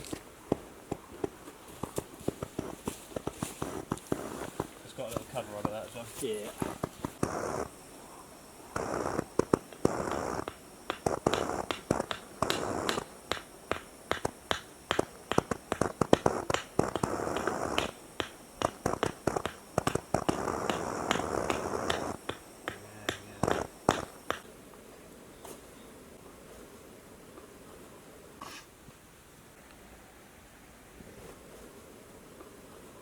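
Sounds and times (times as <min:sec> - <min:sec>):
sharp pops of burning wood: 0:00.0 - 0:07.8, 0:08.7 - 0:24.5
campfire crackling: 0:00.0 - 0:25.3.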